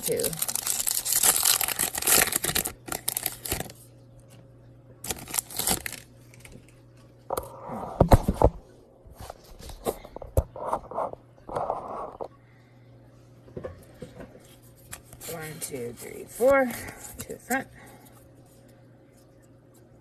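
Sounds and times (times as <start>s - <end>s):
foil wrapper crinkling and tearing: 0.0s - 3.9s, 5.0s - 6.7s.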